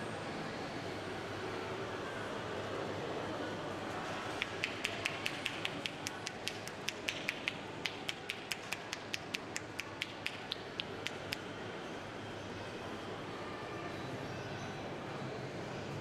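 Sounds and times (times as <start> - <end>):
hands tapping on skin: 4.4 - 11.4.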